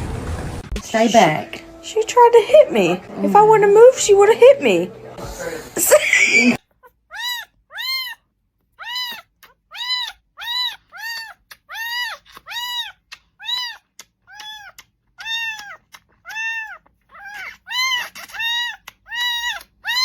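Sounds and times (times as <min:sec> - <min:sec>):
cat meowing: 0:06.4 - 0:08.2, 0:08.8 - 0:20.0.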